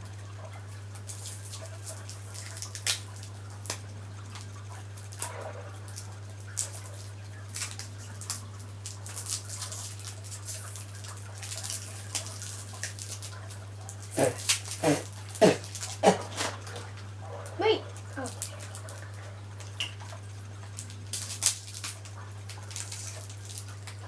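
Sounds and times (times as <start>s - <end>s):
plastic wrapper crinkling: 5.9s - 17.1s, 18.2s - 24.0s.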